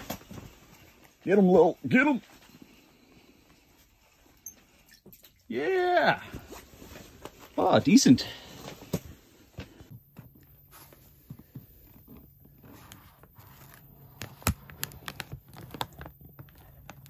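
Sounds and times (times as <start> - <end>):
handling clicks and crinkles: 11.4 - 17.0.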